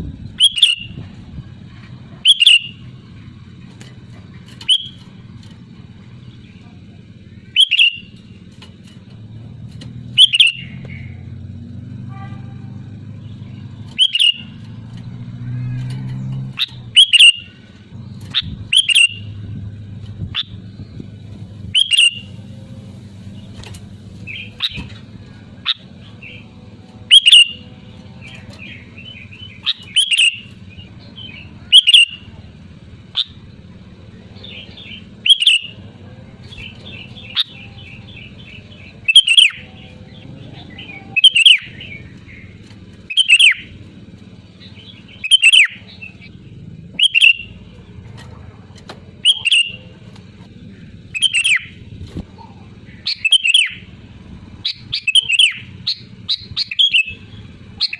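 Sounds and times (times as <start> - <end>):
bulbul calling: 0.3 - 1.0, 2.1 - 9.0, 9.9 - 11.4, 12.1 - 14.7, 16.3 - 19.4, 20.2 - 22.5, 23.1 - 48.3, 49.0 - 57.9
soft bird chattering: 0.4 - 1.0, 2.1 - 2.9, 3.6 - 5.2, 5.9 - 8.4, 10.1 - 11.2, 13.2 - 14.6, 18.2 - 19.4, 23.3 - 43.8, 44.5 - 48.3, 49.2 - 54.0, 54.6 - 57.9.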